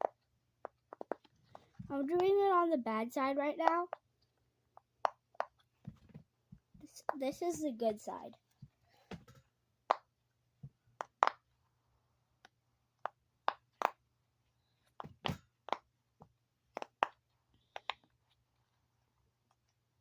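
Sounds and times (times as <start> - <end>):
fidget toy bubbles popping: 0.0 - 1.3, 11.0 - 11.4.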